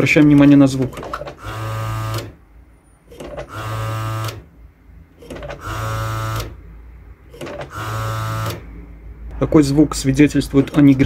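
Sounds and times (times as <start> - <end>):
air pump buzzing: 0.9 - 2.3, 5.2 - 6.5.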